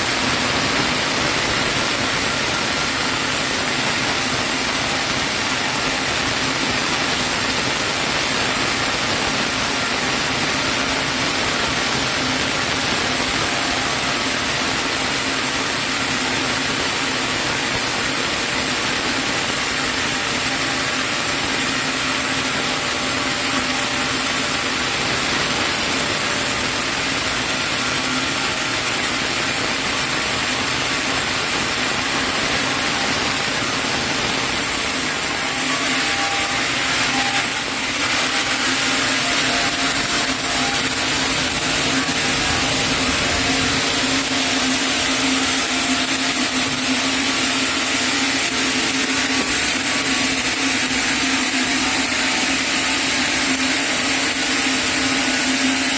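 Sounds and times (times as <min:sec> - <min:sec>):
band saw cutting log: 0:31.7 - 0:55.9.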